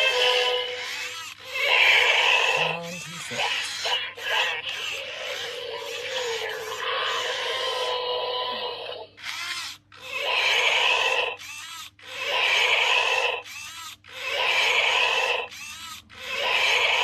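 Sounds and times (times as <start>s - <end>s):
toy dinosaur electronic roar: 0.0s - 17.0s.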